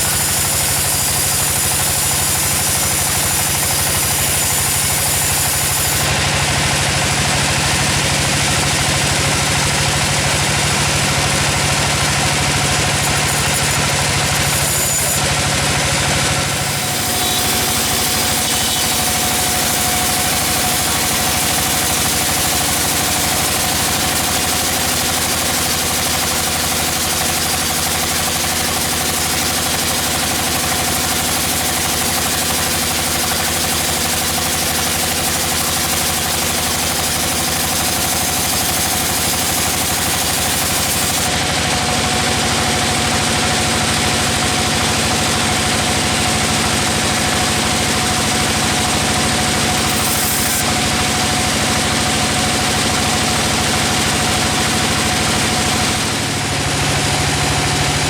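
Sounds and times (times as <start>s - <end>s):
high machine whine: 0.0s - 24.5s, 47.1s - 58.0s
engine drone: 0.0s - 25.4s.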